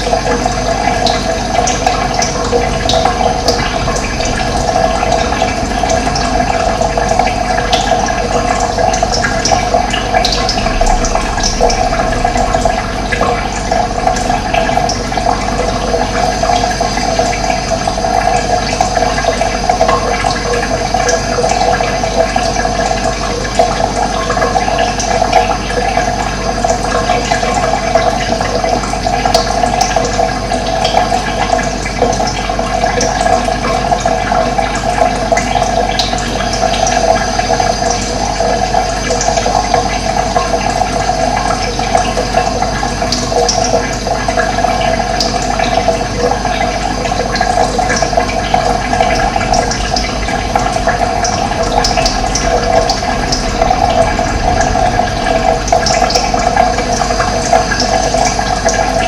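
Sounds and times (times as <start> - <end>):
running water rushing: 0.0 - 59.0.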